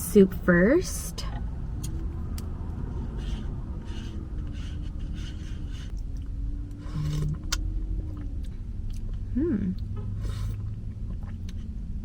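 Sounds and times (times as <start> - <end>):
low room hum: 0.0 - 12.0
spoon scraping and sipping: 3.0 - 7.6.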